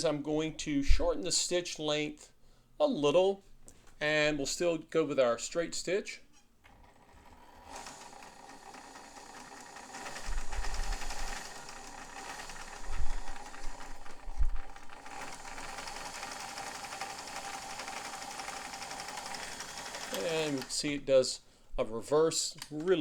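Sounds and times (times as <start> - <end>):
sewing machine stitching: 6.6 - 21.0.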